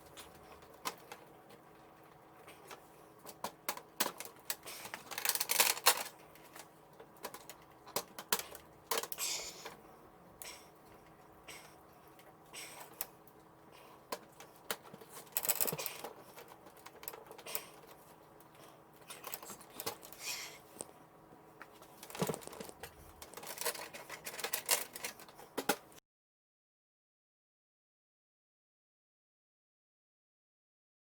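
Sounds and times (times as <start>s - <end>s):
plastic and metal rustling: 0.0s - 9.8s, 14.1s - 21.0s, 21.6s - 26.0s.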